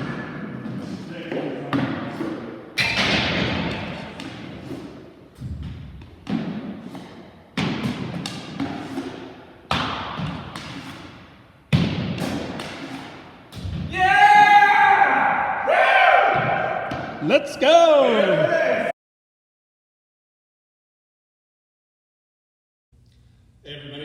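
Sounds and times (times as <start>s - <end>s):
hard echoing thuds: 5.3s - 8.8s, 11.7s - 12.8s, 16.2s - 17.2s.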